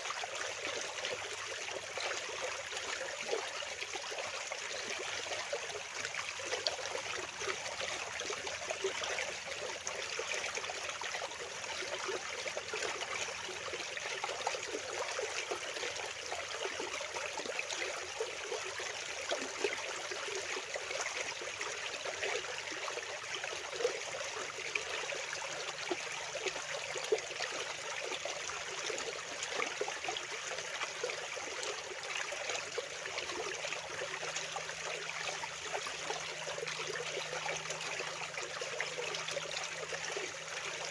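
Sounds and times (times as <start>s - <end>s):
fast-flowing water rushing: 14.2s - 40.9s.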